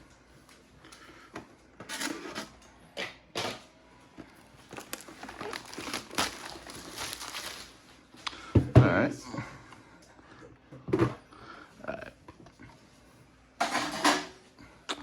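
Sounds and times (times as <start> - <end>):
foil wrapper tearing and crinkling: 4.6 - 7.8.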